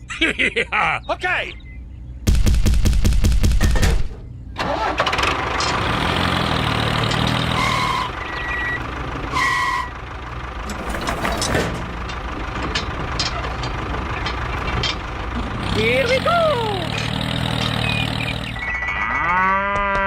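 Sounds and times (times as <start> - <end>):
engine cranking and running: 4.6 - 18.7.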